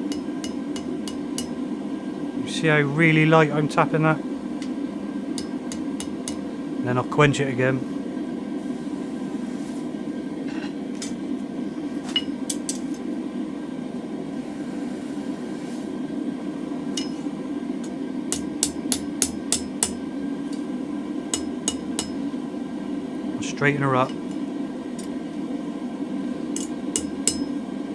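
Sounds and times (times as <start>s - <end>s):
steady low hum: 0.0s - 27.9s
hammer tapping steel on anvil: 0.1s - 1.6s, 5.4s - 6.4s, 17.0s - 17.2s, 17.8s - 20.6s, 21.3s - 22.2s, 26.6s - 27.6s.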